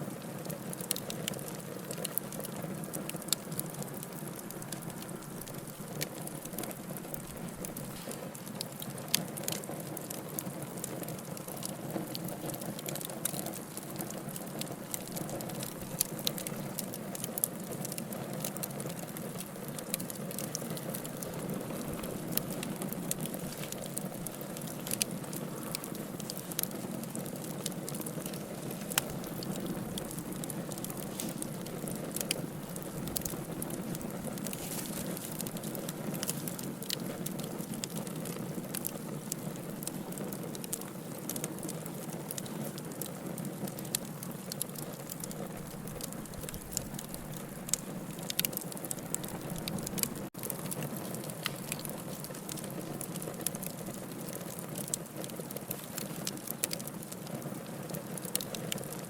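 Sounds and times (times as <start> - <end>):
campfire crackling and popping: 0.0 - 59.0.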